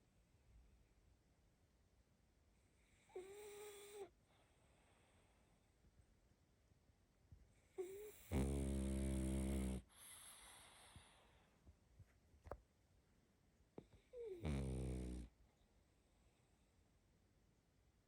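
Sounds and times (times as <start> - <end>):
puppy snoring: 2.8 - 4.1, 7.7 - 11.4, 13.8 - 15.4
soft breath out: 9.9 - 11.6.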